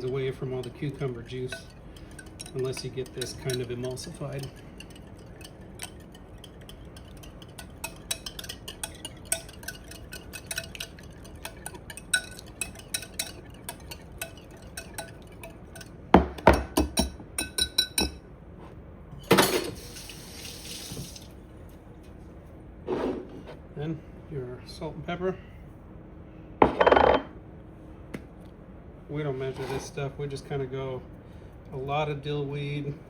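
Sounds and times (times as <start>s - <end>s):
wire whisk clicking against bowl: 0.0s - 15.9s.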